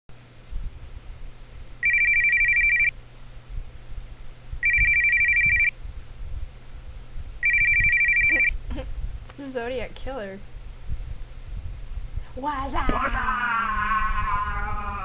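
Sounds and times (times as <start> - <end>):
telephone warbling ring: 1.8 - 2.9, 4.6 - 5.7, 7.4 - 8.6.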